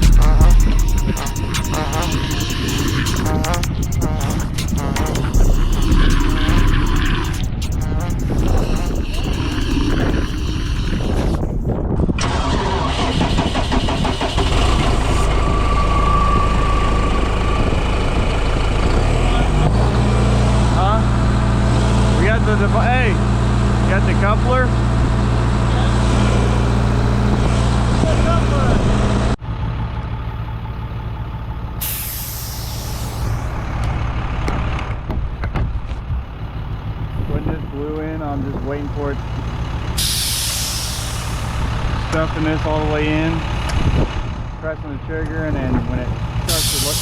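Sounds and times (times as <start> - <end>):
engine running: 0.0 - 47.0
wind noise: 2.4 - 18.9, 43.7 - 44.2
compressed air hiss: 31.8 - 33.5, 40.0 - 41.6, 46.5 - 47.0.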